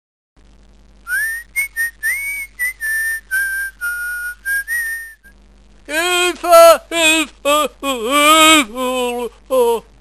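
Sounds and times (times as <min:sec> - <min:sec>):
person whistling a tune: 0:01.1 - 0:05.3.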